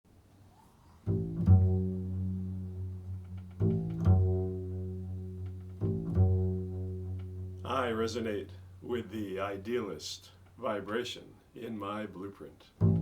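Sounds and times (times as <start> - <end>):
low ringing instrumental notes: 1.1 - 9.0.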